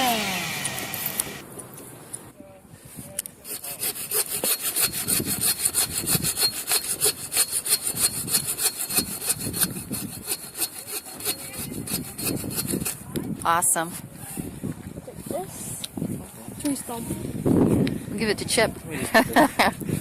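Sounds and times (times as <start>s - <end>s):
hand saw cutting wood: 0.0s - 1.4s, 3.4s - 13.0s.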